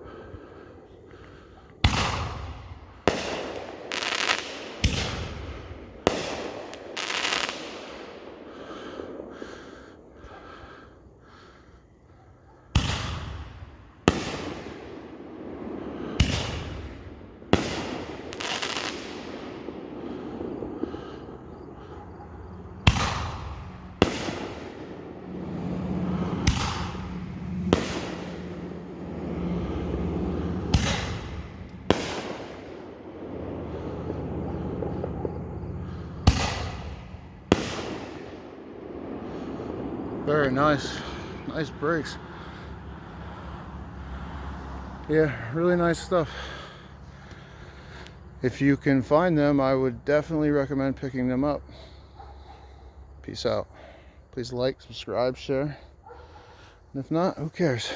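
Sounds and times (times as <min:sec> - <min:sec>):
firework hiss and crackle: 0:00.0 - 0:12.0, 0:12.7 - 0:52.1
firework shells bursting: 0:01.8 - 0:08.2, 0:16.1 - 0:43.6.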